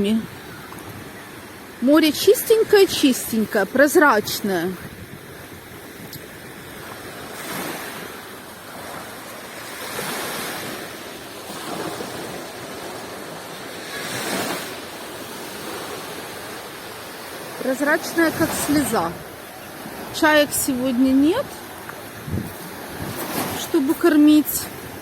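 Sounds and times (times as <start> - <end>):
waves washing onto beach: 0.0 - 25.0
wind on microphone: 4.6 - 8.1, 18.3 - 23.8.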